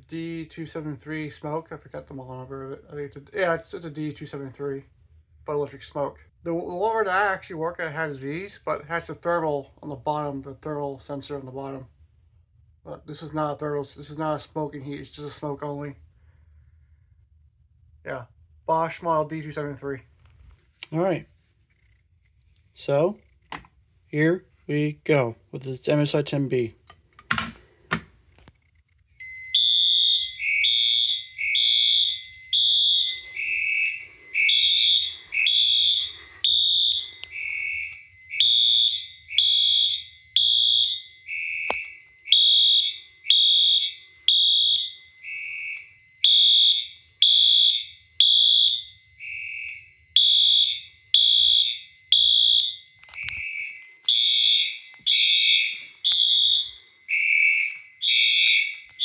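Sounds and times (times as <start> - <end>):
fire alarm horns pulsing: 29.2 - 59.0.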